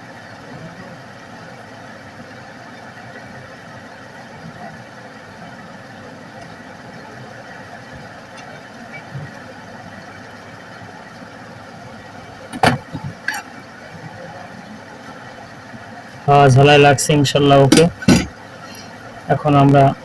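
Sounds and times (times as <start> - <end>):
electric equipment whirring hum: 0.0 - 20.0.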